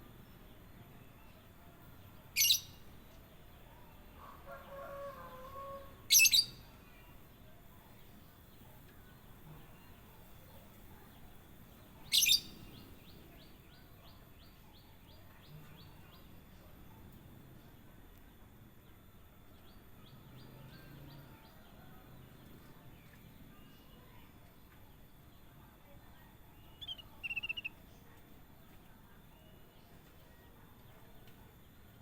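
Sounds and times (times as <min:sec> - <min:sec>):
bird sharp chirps: 0:02.4 - 0:02.8, 0:12.1 - 0:12.8, 0:26.7 - 0:27.8.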